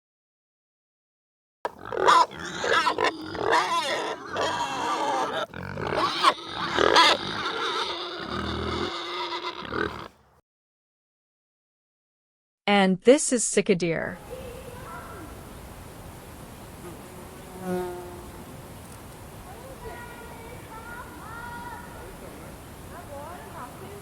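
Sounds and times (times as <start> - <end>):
pigs grunting and squealing: 1.7 - 10.2.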